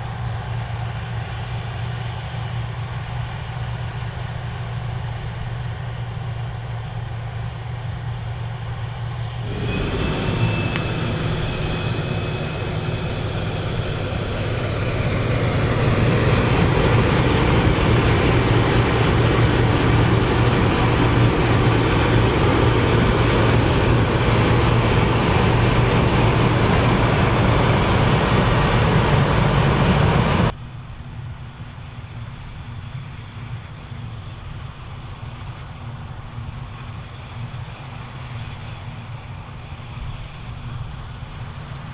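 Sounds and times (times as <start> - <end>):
combine harvester drone: 0.0 - 30.6.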